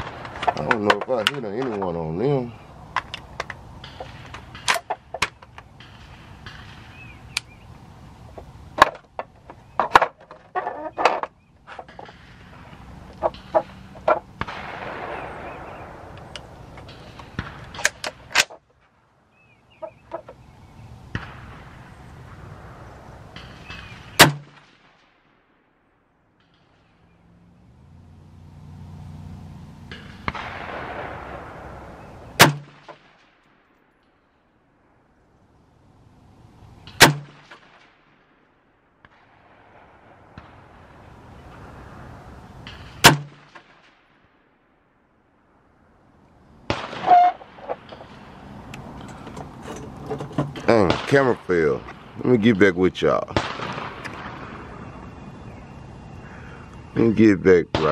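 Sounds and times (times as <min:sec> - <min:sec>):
rifle shots: 0:11.8 - 0:18.6, 0:23.4 - 0:25.1, 0:29.9 - 0:33.2, 0:36.9 - 0:38.0, 0:42.6 - 0:43.9, 0:46.7 - 0:48.5, 0:53.3 - 0:55.0.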